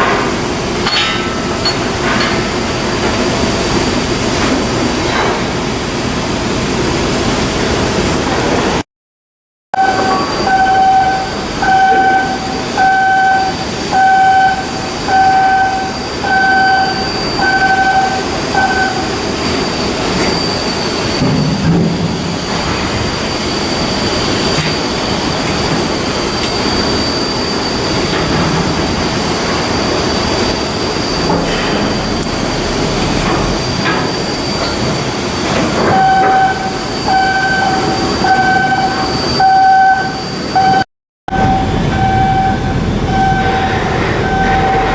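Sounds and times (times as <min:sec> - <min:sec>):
two-tone warning beeper: 0:09.8 - 0:19.2, 0:35.9 - 0:44.9
high whine: 0:09.8 - 0:34.7, 0:35.8 - 0:44.9
heavy machinery rumble: 0:09.8 - 0:39.3, 0:40.6 - 0:44.9.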